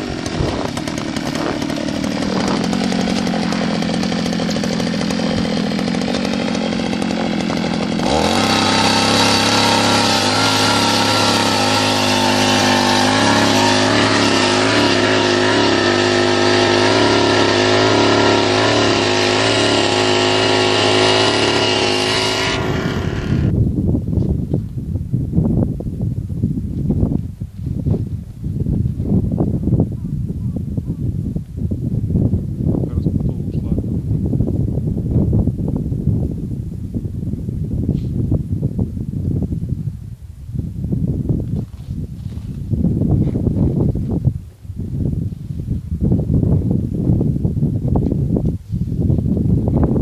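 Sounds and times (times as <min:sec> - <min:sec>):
small petrol engine running: 0:00.0 - 0:23.6.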